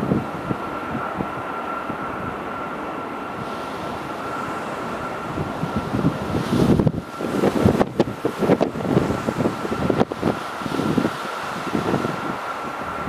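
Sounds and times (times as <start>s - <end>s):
jet engine roar in cabin: 0.0s - 13.0s
low rumbling with jolts: 5.2s - 13.0s.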